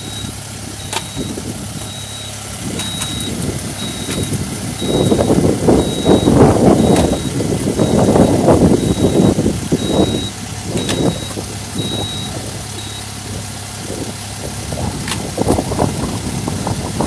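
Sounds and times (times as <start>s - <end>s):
reversing alarm beeping: 0.0s - 13.1s
engine idling: 0.0s - 17.0s.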